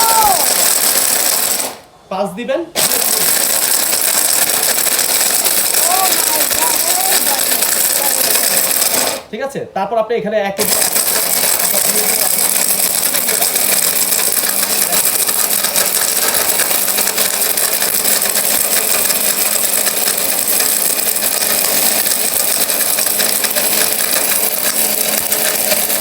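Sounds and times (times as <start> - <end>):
turmeric pieces rattling in jug: 0.0 - 1.8, 2.8 - 9.2, 10.6 - 26.0
mixer grinder running: 0.0 - 2.0, 2.8 - 9.3, 10.6 - 26.0.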